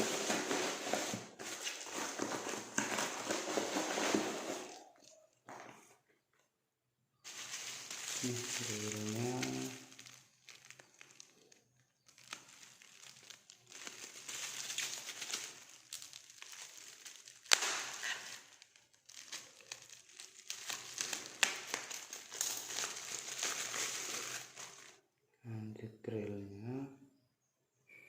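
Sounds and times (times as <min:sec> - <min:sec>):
plastic packaging crinkling: 0:00.0 - 0:05.9, 0:07.2 - 0:25.0.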